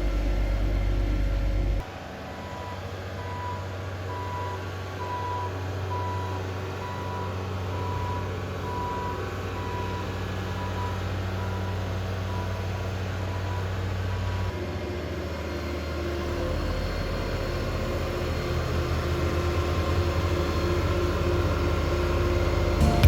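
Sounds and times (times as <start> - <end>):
diesel engine hum: 0.0 - 23.0
reversing alarm beeping: 2.3 - 14.5.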